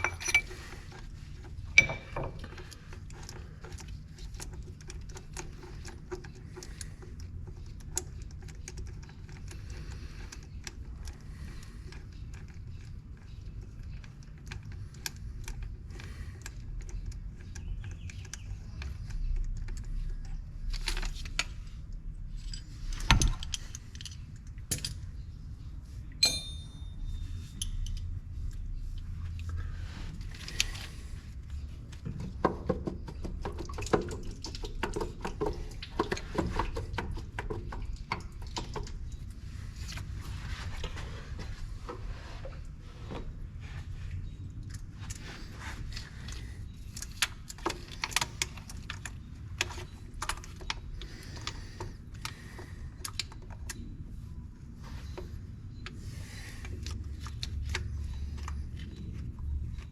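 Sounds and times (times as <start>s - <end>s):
metal tools clinking and rattling: 0.0s - 0.8s, 1.7s - 2.4s, 26.2s - 28.0s
short metallic ring: 26.2s - 27.2s.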